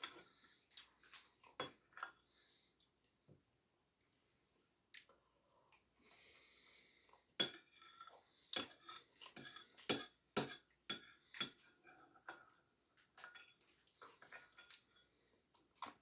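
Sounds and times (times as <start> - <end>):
cutlery clinking against a dish: 7.4 - 12.4
cutlery scraping dish: 7.4 - 12.4.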